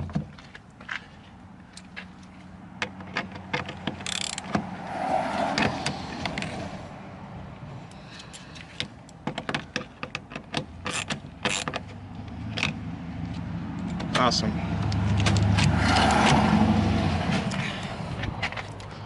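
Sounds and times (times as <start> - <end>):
hand tool clicking and rattling: 1.8 - 4.6, 8.1 - 12.8.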